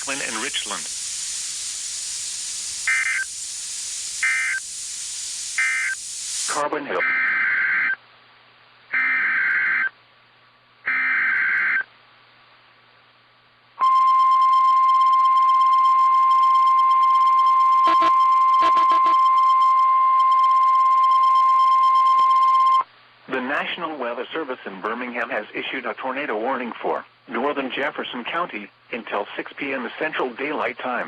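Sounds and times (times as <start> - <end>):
digital data noise bursts: 0.0 - 6.6, 17.2 - 21.6
single-pitch warning alarm tone: 2.8 - 3.4, 4.2 - 4.7, 5.6 - 6.0, 13.8 - 22.8.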